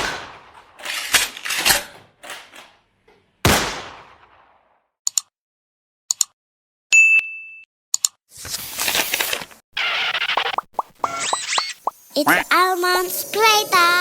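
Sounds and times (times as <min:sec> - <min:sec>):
gunshots: 0:00.0 - 0:00.8, 0:03.4 - 0:04.6.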